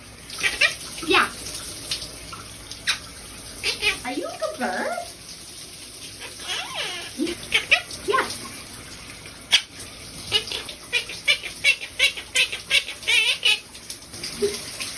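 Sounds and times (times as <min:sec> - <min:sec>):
parrot sliding calls: 0:00.4 - 0:00.8, 0:06.2 - 0:08.0.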